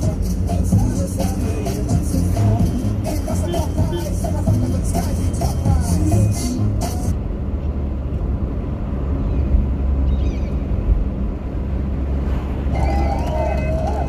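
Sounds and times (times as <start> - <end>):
music playing: 0.0 - 7.2, 12.7 - 14.0
car engine and road rumble: 0.0 - 14.0.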